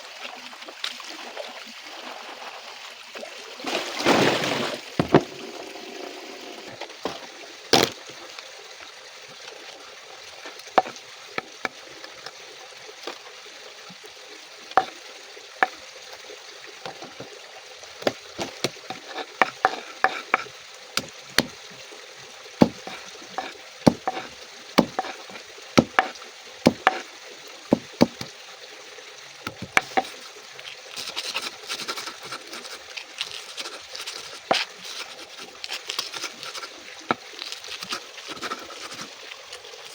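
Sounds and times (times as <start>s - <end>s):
stirring clicks and taps: 10.4s - 12.2s, 14.7s - 15.0s, 18.0s - 21.6s, 22.6s - 27.1s, 27.7s - 28.3s, 29.5s - 39.9s
food sizzling in a pan: 18.9s - 21.6s, 22.6s - 27.1s.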